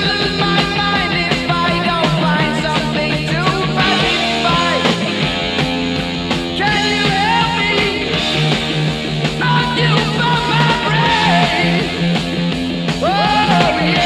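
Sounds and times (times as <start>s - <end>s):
rock music: 0.0s - 14.0s.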